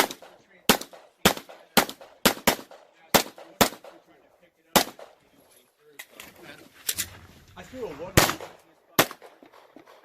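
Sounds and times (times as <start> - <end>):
pistol shots: 0.0 - 4.1, 4.7 - 5.2, 8.2 - 10.0.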